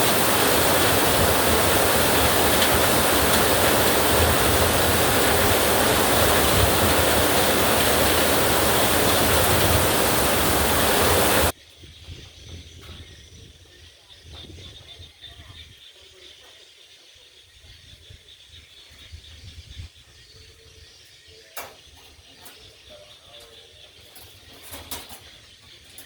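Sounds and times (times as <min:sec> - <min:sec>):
heavy rain falling: 0:00.0 - 0:11.5.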